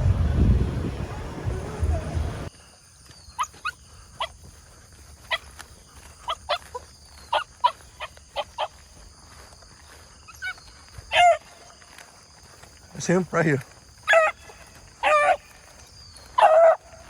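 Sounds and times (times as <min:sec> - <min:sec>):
dog barking: 0:11.1 - 0:11.4, 0:14.1 - 0:15.4, 0:16.4 - 0:17.0.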